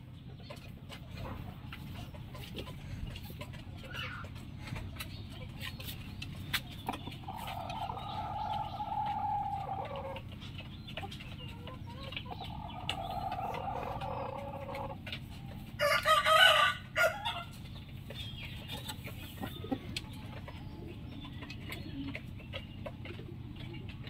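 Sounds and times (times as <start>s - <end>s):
chicken clucks: 0.0s - 24.0s
roosters crowing: 7.2s - 10.3s, 12.5s - 17.6s.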